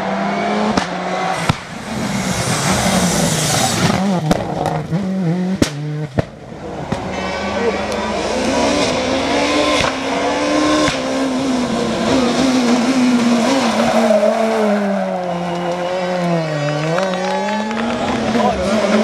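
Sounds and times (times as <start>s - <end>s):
rally car engine revving: 0.0s - 19.0s.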